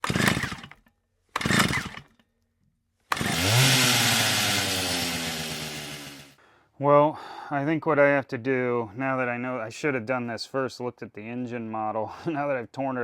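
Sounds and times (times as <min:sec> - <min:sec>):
small gasoline engine starting: 0:00.0 - 0:00.8, 0:01.4 - 0:02.2, 0:03.1 - 0:06.4.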